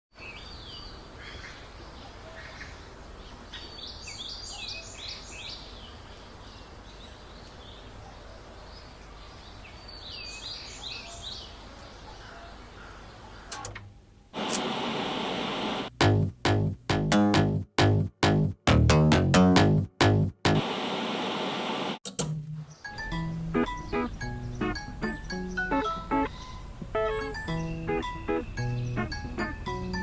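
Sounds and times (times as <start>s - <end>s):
outdoor background hiss: 0.1s - 17.1s, 20.5s - 30.0s
birds singing: 0.2s - 13.6s, 22.7s - 30.0s
loud hiss-like swoosh: 14.4s - 15.9s.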